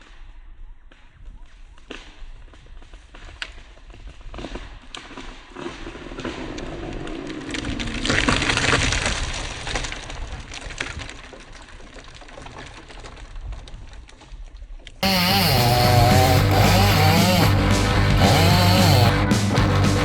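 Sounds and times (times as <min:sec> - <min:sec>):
loud music: 0:15.0 - 0:20.0.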